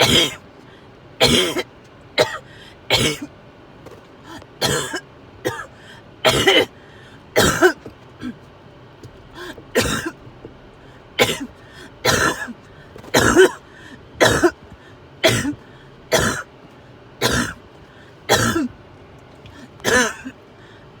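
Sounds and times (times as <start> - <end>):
person coughing: 0.0 - 0.4, 1.2 - 3.3, 4.3 - 6.8, 7.4 - 8.5, 9.3 - 10.3, 11.2 - 14.6, 15.2 - 16.5, 17.2 - 17.6, 18.3 - 18.8, 19.5 - 20.4.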